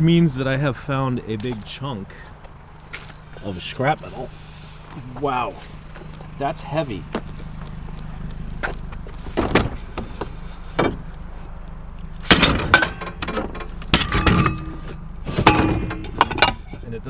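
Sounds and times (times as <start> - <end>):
scrap metal clanking: 12.2 - 16.9.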